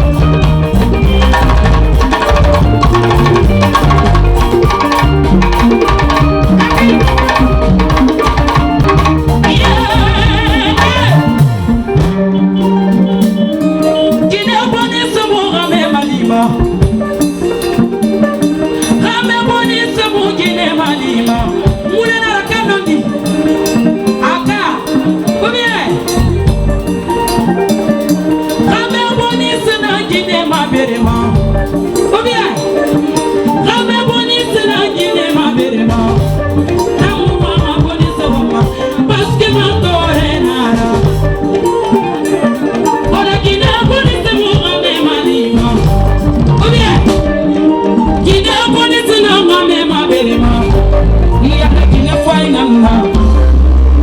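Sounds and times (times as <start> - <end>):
bass line: 0.0 - 13.3, 26.1 - 27.2, 31.0 - 32.0, 35.9 - 41.8, 45.6 - 48.6, 50.2 - 54.0
percussion beat: 0.0 - 54.0
person singing: 0.0 - 54.0.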